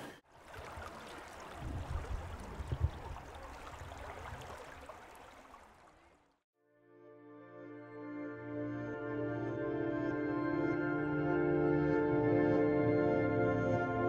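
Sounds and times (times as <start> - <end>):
stream water rushing: 0.0 - 6.3.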